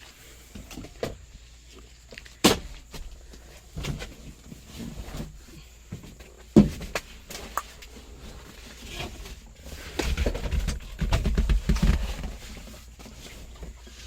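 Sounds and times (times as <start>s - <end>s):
hands clicking and knocking: 10.1s - 12.3s.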